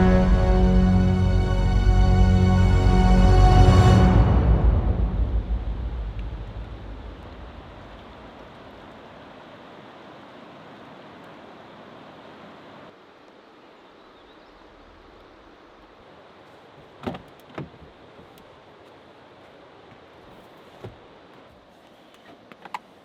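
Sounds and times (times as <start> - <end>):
music: 0.0 - 6.8
steady outdoor noise: 0.0 - 23.0.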